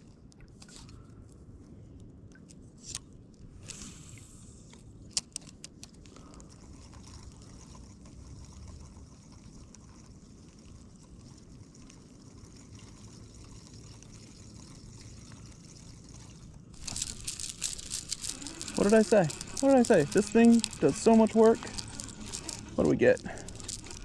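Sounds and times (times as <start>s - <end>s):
faint water sounds: 5.9s - 24.0s.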